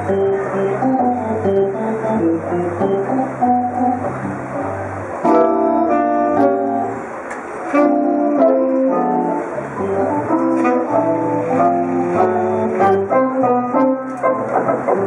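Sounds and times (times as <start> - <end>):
plucked guitar music: 0.0 - 7.1
bass notes: 0.0 - 15.0.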